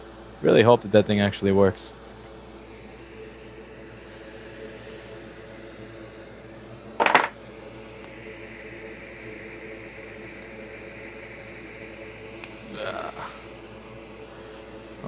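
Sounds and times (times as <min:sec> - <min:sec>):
fan hum: 0:00.0 - 0:15.0.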